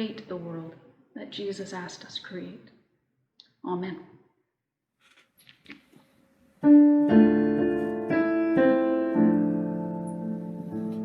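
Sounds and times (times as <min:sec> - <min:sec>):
piano playing slow chords: 0:06.6 - 0:11.0.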